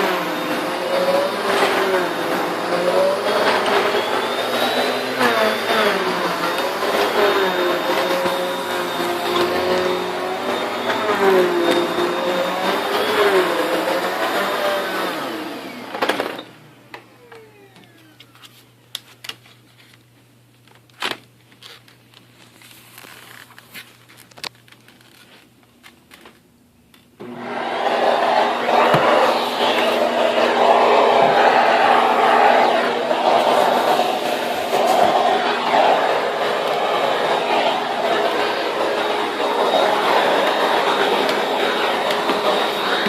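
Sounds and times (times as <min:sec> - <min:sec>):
vacuum cleaner running: 0:00.0 - 0:18.6, 0:27.2 - 0:43.0
motor winding down whine: 0:27.2 - 0:43.0.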